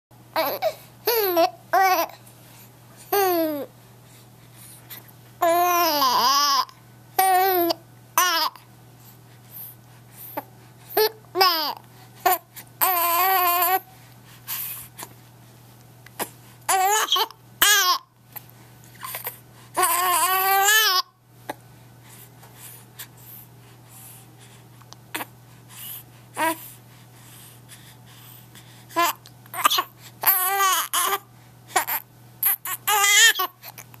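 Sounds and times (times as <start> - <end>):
baby crying: 5.4 - 8.6, 11.0 - 13.8, 16.7 - 18.0, 19.8 - 21.1, 29.0 - 31.2, 31.8 - 33.6.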